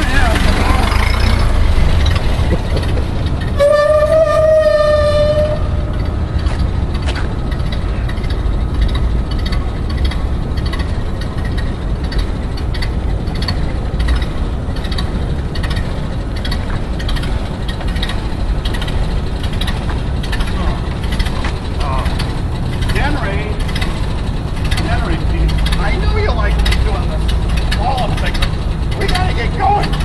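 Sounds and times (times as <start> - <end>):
truck engine rumbling and ticking: 0.0 - 30.0
horn note: 3.6 - 5.8.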